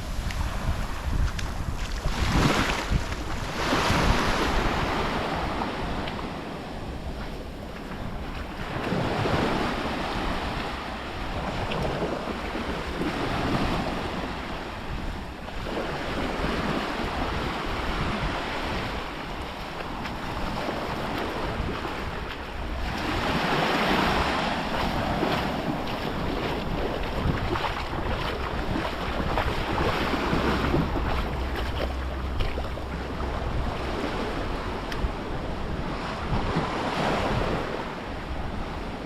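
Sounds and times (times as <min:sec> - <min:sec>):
small waves breaking on beach: 0:00.0 - 0:39.0
wind buffeting microphone: 0:00.0 - 0:39.0.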